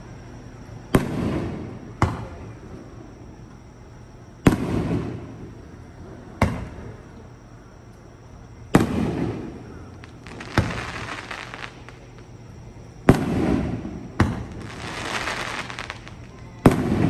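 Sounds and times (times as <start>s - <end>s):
fireworks bursting with bangs: 0.9s - 2.6s, 4.4s - 5.6s, 8.7s - 12.4s, 13.0s - 17.0s.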